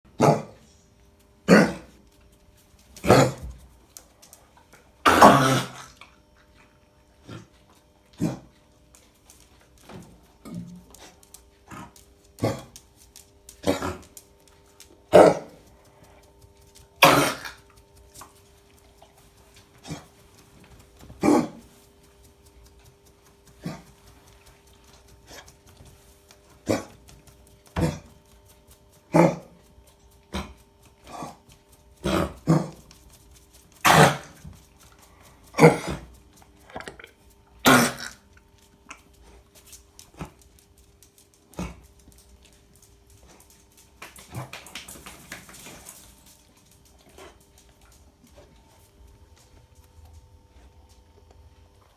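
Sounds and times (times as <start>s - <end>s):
dog coughing: 1.5s - 1.9s, 3.0s - 3.5s, 5.0s - 6.0s, 13.6s - 14.0s, 15.1s - 15.6s, 17.0s - 17.6s, 21.2s - 21.6s, 26.7s - 26.9s, 27.8s - 28.1s, 33.8s - 34.4s, 35.6s - 36.1s, 37.6s - 38.2s.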